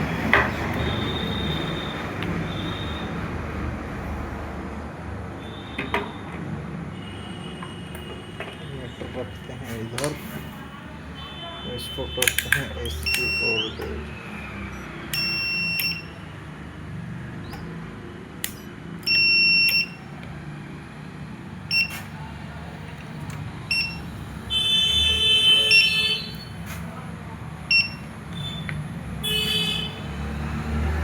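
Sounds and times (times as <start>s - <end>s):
high electronic buzzer beeps: 0.8s - 3.1s, 11.3s - 14.1s, 14.7s - 16.2s, 19.0s - 20.1s, 21.7s - 22.0s, 23.7s - 26.6s, 27.7s - 29.9s.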